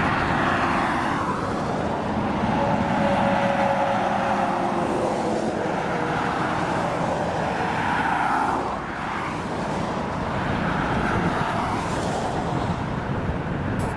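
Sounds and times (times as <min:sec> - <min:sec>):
highway traffic rushing: 0:00.0 - 0:13.9
vehicles passing: 0:00.0 - 0:13.9.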